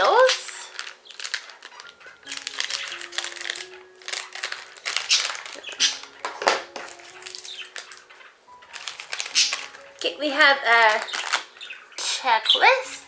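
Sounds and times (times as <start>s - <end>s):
plastic foil bag crinkling and tearing: 0.0s - 12.1s.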